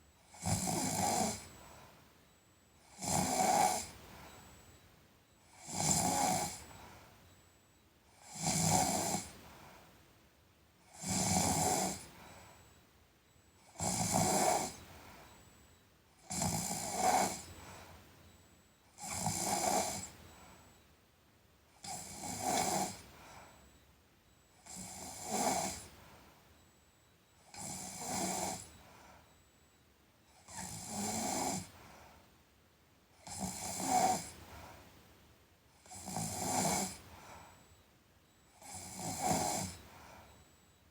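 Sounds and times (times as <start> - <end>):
person snoring: 0.3 - 1.5, 2.9 - 3.9, 5.6 - 6.7, 10.9 - 12.1, 13.8 - 14.8, 16.3 - 17.4, 19.0 - 20.1, 21.8 - 23.0, 24.6 - 25.9, 27.5 - 28.7, 33.3 - 34.4, 35.8 - 37.0, 38.6 - 39.8
soft breathing: 0.9 - 2.1, 3.6 - 4.9, 6.4 - 7.5, 9.2 - 10.1, 11.9 - 12.8, 14.2 - 15.8, 17.3 - 18.4, 22.0 - 23.9, 27.8 - 29.7, 31.6 - 32.4, 34.3 - 35.1, 36.9 - 38.4, 39.1 - 40.8.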